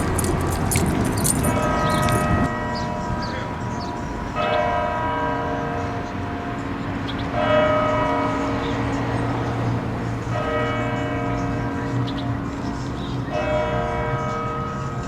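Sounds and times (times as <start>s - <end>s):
clattering noise: 0.0s - 2.5s.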